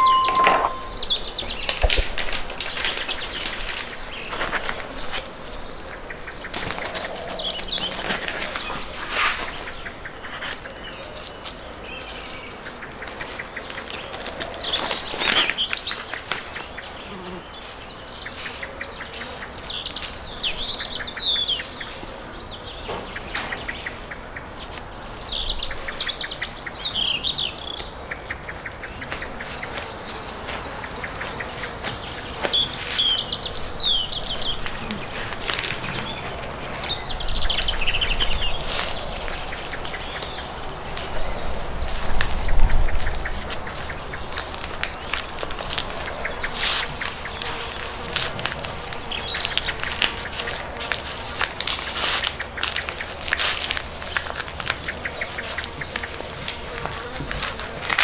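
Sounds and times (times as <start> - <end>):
handling clicks and knocks: 0.0 - 3.6
small birds chirping: 0.0 - 58.0.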